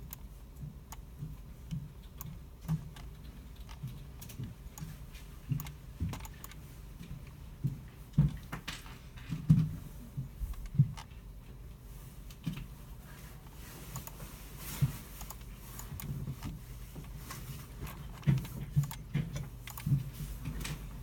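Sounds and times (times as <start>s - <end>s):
keyboard typing: 0.0s - 6.6s, 15.1s - 20.0s
mouse clicks: 17.9s - 19.9s.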